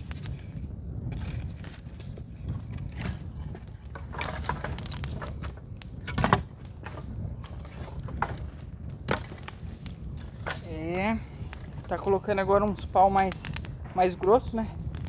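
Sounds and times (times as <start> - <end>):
wood fire crackling and popping: 0.0 - 15.0
wood sticks knocking: 3.5 - 9.6.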